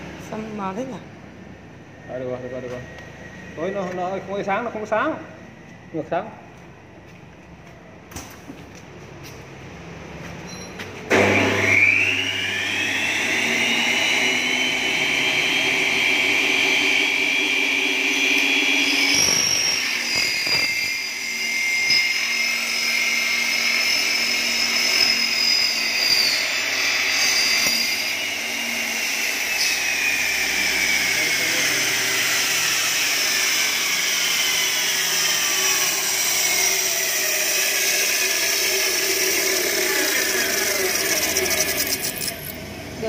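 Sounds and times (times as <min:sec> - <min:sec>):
saw cutting aluminium: 0:11.1 - 0:43.0.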